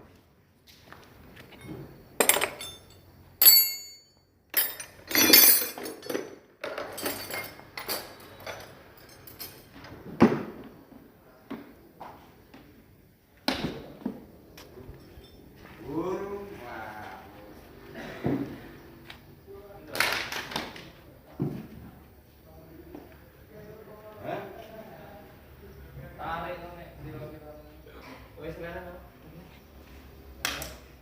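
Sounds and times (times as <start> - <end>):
metal parts clinking and knocking: 1.5 - 9.8
ringing metal strike: 3.4 - 4.2.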